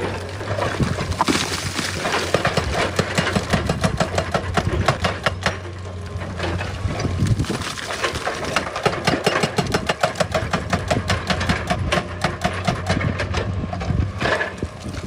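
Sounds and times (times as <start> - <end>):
excavator engine humming: 0.0 - 15.0
rock clattering knocks: 0.7 - 4.0.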